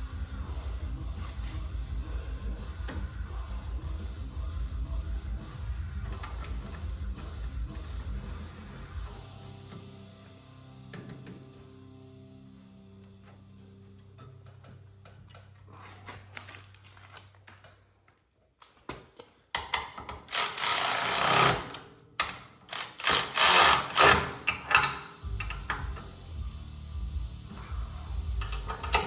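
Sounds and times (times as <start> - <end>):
faint background music: 0.0 - 18.6, 19.8 - 29.0
power tool bursts: 20.3 - 21.8, 22.7 - 24.4.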